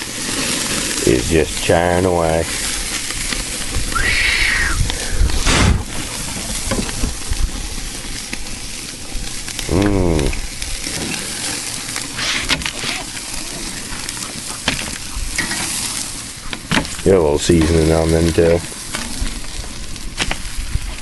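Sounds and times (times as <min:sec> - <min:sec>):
charcoal grill hissing and crackling: 0:00.0 - 0:21.0
drawn-out call rising and falling: 0:03.9 - 0:05.3.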